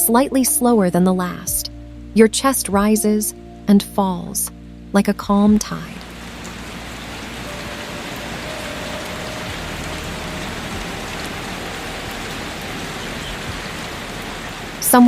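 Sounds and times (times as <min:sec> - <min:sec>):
steady rainfall: 0:06.0 - 0:15.0.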